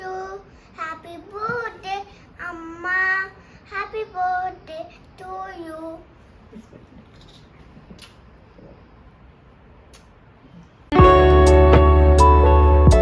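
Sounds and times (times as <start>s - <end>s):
child singing: 0.0s - 6.1s.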